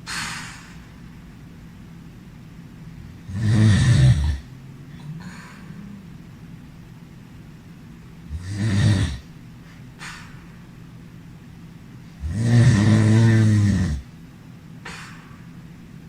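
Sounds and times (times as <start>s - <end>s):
faint breaths: 0.0s - 1.2s, 2.8s - 6.4s, 9.1s - 11.3s
person snoring: 3.2s - 6.1s, 8.3s - 9.3s, 12.2s - 14.1s.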